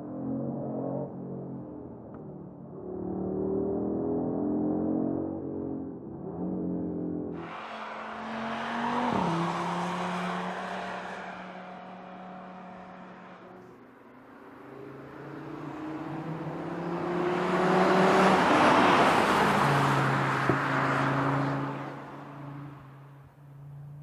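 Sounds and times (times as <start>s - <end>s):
car engine accelerating past: 7.4s - 13.8s, 14.6s - 22.8s.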